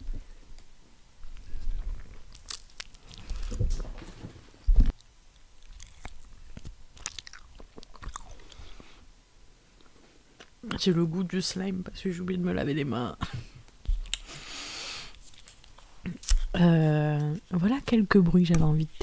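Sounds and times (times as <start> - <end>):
chewing gummy candy: 1.4 - 3.8, 4.9 - 8.9.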